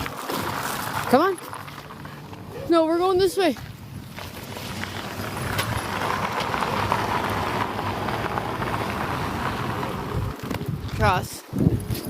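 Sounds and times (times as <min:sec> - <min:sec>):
car driving past: 0:03.8 - 0:10.8.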